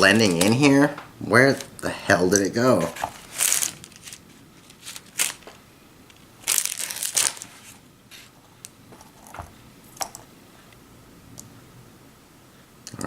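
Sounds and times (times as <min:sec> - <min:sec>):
plastic packaging rustling: 0:00.0 - 0:10.3.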